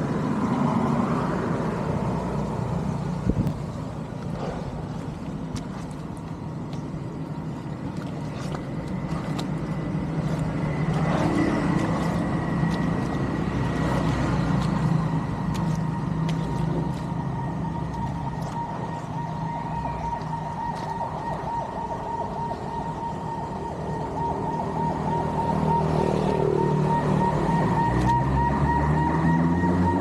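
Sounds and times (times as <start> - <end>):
engine whining: 9.0 - 30.0.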